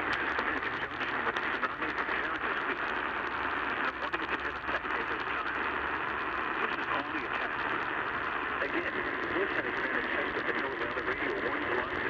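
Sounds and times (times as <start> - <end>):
radio static hiss: 0.0 - 12.0
static crackles: 0.0 - 12.0.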